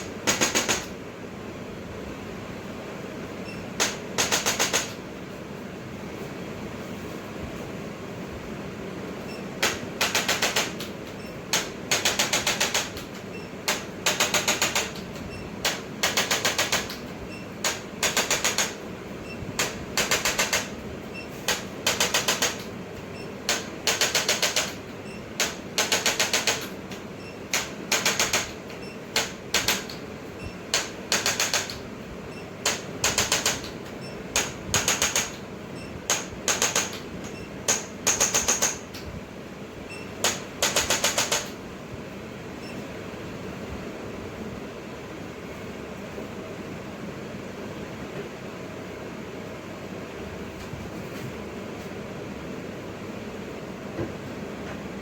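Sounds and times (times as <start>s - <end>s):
percussion instrument rapid mechanical clicks: 0.2s - 1.0s, 3.8s - 5.0s, 9.6s - 18.8s, 19.6s - 20.8s, 21.5s - 22.7s, 23.4s - 30.0s, 30.7s - 31.8s, 32.6s - 35.4s, 36.1s - 39.1s, 40.2s - 41.6s.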